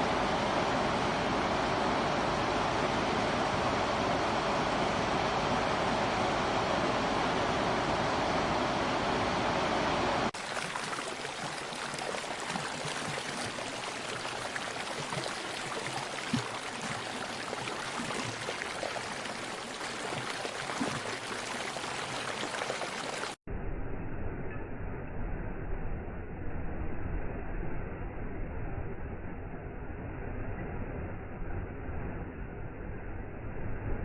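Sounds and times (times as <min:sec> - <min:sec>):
small water splashes: 0:10.4 - 0:23.4
stream water rushing: 0:10.4 - 0:23.4.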